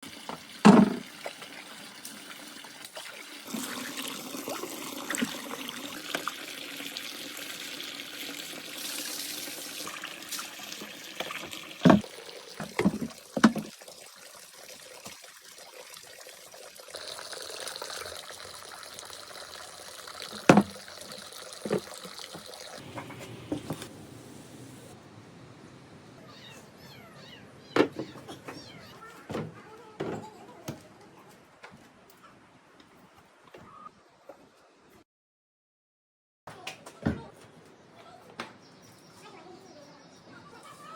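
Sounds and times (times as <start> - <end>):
running water: 0.0 - 25.0.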